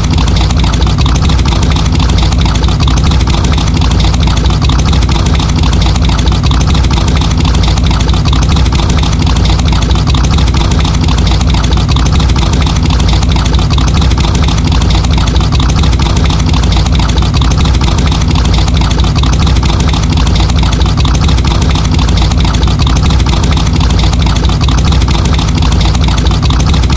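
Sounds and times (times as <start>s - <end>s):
car engine idling: 0.0s - 26.9s.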